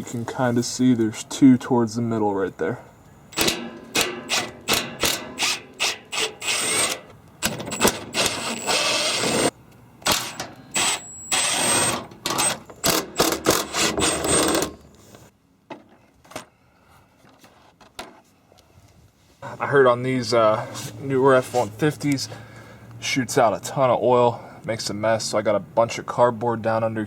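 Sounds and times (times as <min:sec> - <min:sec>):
socket tool clicking and whining: 0:03.3 - 0:15.0.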